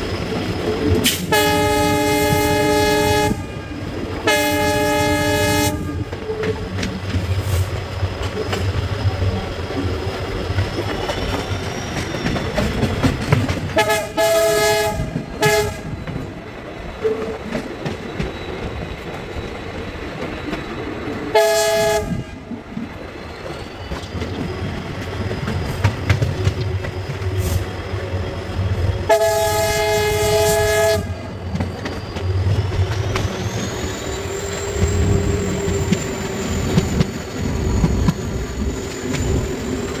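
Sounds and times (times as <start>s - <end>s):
locomotive engine hum: 0.0s - 40.0s
train coach clickety-clack: 0.0s - 40.0s
locomotive horn blasts: 1.3s - 3.6s, 4.2s - 6.2s, 13.8s - 16.0s, 21.3s - 22.5s, 29.1s - 31.3s.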